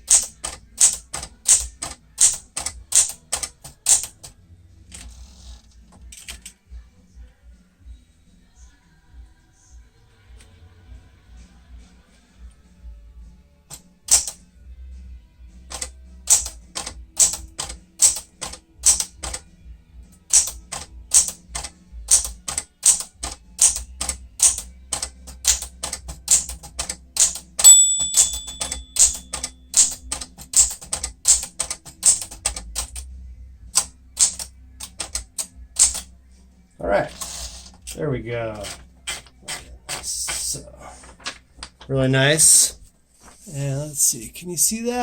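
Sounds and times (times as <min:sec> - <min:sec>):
typewriter typebars striking: 0:00.0 - 0:05.1, 0:13.7 - 0:14.4, 0:15.7 - 0:19.4, 0:20.2 - 0:33.1, 0:33.8 - 0:36.1, 0:37.1 - 0:41.8
typewriter bell ringing: 0:20.3 - 0:33.0.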